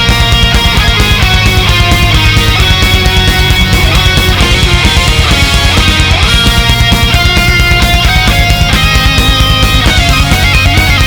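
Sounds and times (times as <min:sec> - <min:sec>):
heavy metal music: 0:00.0 - 0:11.0.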